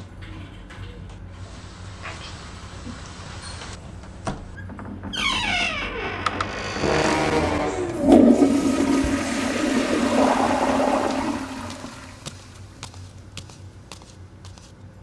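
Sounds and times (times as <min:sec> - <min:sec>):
toilet flushing: 0:06.8 - 0:12.7.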